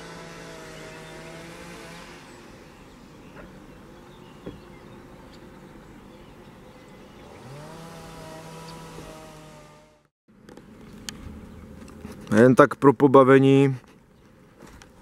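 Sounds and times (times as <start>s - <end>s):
engine hum with buzzing tone: 0.0s - 12.4s.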